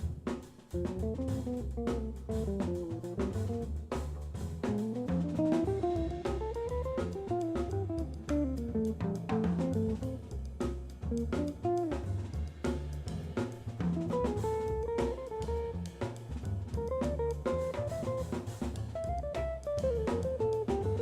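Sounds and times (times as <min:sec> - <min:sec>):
bass: 0:00.0 - 0:21.0
drum kit: 0:00.0 - 0:21.0
guitar melody: 0:04.8 - 0:10.3, 0:11.1 - 0:12.2, 0:14.0 - 0:15.8, 0:16.8 - 0:21.0.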